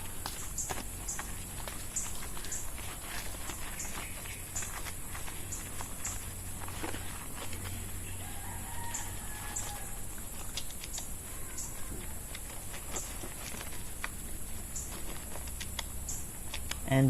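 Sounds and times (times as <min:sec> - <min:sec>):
distant rooster crowing: 0:07.9 - 0:10.4.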